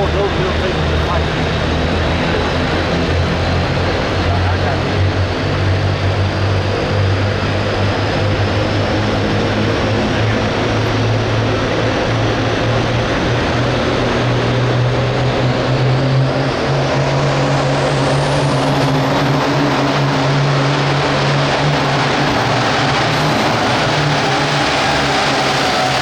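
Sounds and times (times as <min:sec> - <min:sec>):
tractor diesel engine at high revs: 0:00.0 - 0:26.0.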